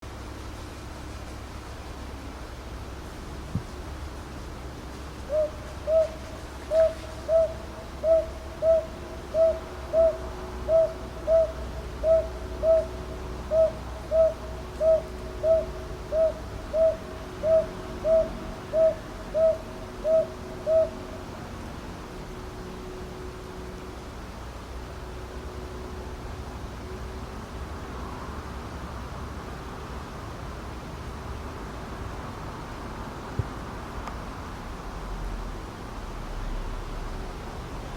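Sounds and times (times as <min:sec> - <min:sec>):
owl hooting in pairs: 0:05.3 - 0:21.0.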